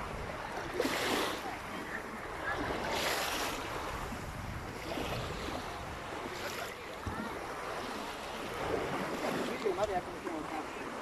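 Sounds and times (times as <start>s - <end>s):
wind buffeting microphone: 0.0s - 7.8s
sea waves washing on beach: 0.0s - 11.0s.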